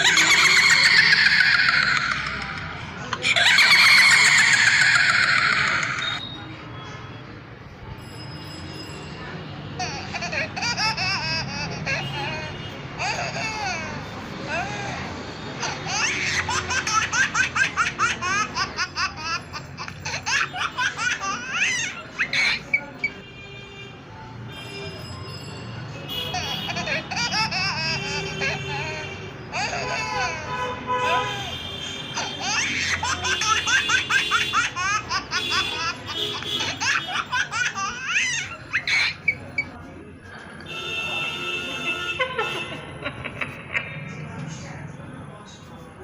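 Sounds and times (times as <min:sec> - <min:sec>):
baby giggling: 0:00.0 - 0:06.2, 0:09.8 - 0:23.0, 0:26.1 - 0:30.6, 0:32.2 - 0:39.8
high-pitched laughter: 0:00.0 - 0:06.2, 0:26.1 - 0:30.6, 0:32.1 - 0:39.8.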